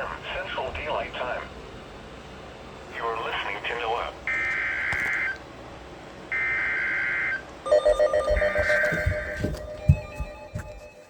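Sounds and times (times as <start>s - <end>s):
low thumps: 7.9s - 10.8s.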